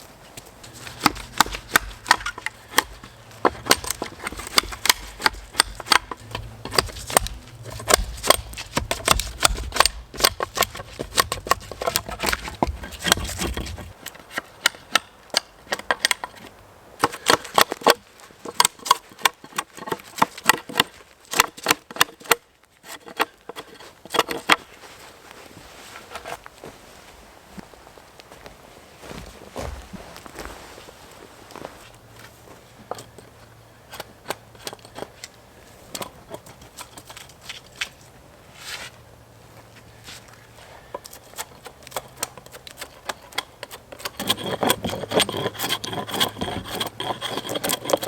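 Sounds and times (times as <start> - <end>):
footsteps crunching through snow: 24.7 - 32.9.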